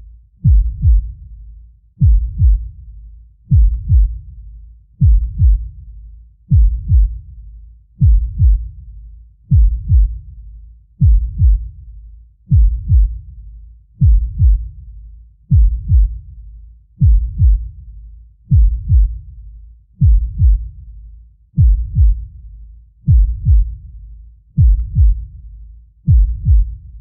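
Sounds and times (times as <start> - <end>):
heartbeat thumps: 0.4 - 1.2, 2.0 - 2.8, 3.5 - 4.3, 5.0 - 5.8, 6.5 - 7.3, 8.0 - 8.8, 9.5 - 10.3, 11.0 - 11.8, 12.5 - 13.3, 14.0 - 14.8, 15.5 - 16.3, 17.0 - 17.8, 18.5 - 19.3, 20.0 - 20.8, 21.6 - 22.4, 23.0 - 23.9, 24.6 - 25.4, 26.0 - 27.0.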